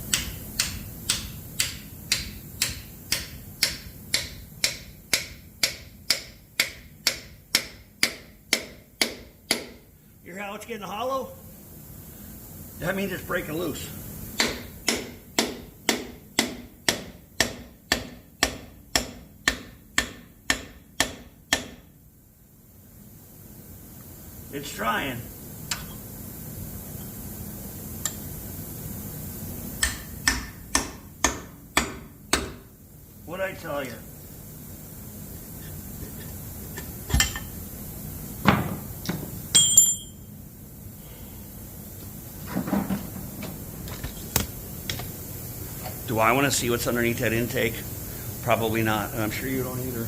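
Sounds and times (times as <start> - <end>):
hammer striking chisel: 0.1 - 9.8, 14.4 - 21.9, 29.8 - 32.6.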